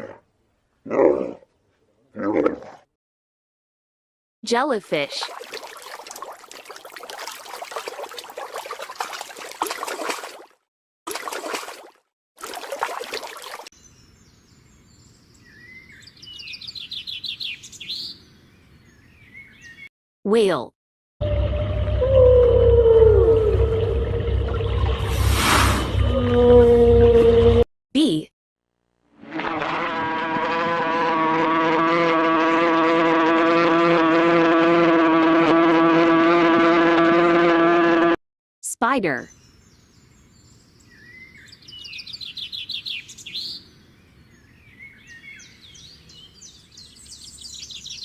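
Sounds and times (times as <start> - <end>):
small birds chirping: 13.5 - 19.9, 39.2 - 48.0.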